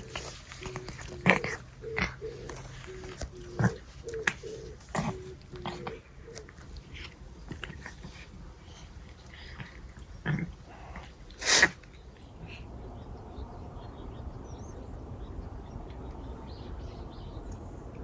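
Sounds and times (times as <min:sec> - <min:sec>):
cats licking: 0:00.0 - 0:12.2
sharp cat noises: 0:10.2 - 0:12.0.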